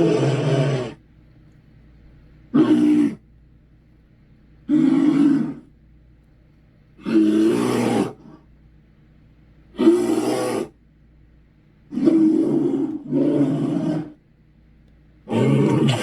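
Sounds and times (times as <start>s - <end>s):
monster growling roars: 0.0s - 1.0s, 7.0s - 8.2s, 12.0s - 14.2s, 15.3s - 16.0s.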